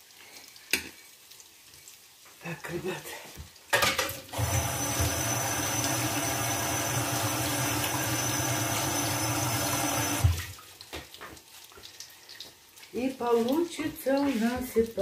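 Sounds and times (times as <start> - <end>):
tap water running into sink: 3.4 - 15.0.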